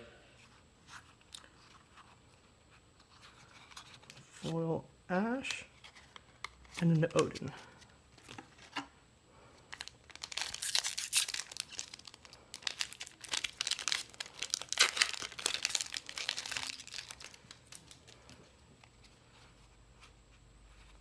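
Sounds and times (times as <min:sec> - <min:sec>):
wrapper crinkling and tearing: 0:09.7 - 0:18.3.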